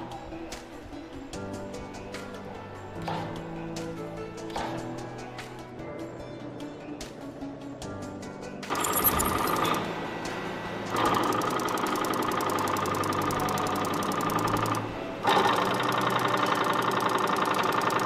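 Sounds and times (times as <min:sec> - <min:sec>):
factory machinery clattering: 0:08.7 - 0:18.0.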